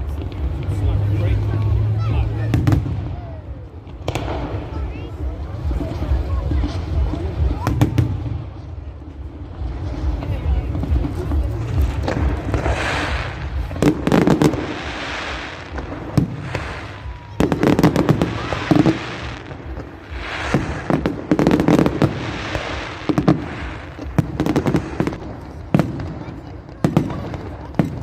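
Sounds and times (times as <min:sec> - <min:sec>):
fireworks bursting with bangs: 0:00.0 - 0:28.0
fireworks hissing: 0:00.0 - 0:28.0.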